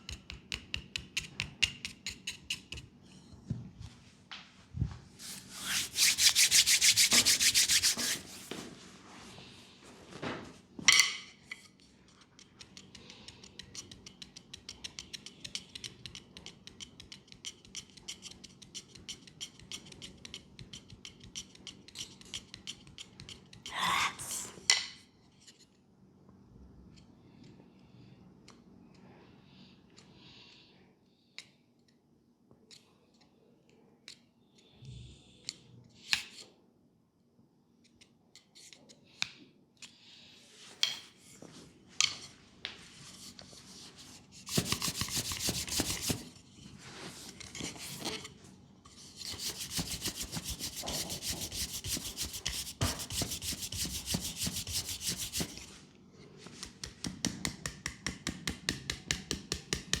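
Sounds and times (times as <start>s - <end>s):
hands rubbing skin: 5.2s - 8.6s, 42.7s - 48.1s, 49.2s - 55.8s.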